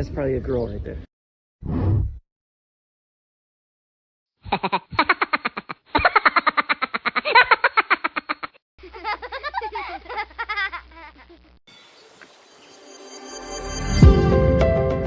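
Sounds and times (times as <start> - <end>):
stuttering laughing calls: 4.5 - 11.6.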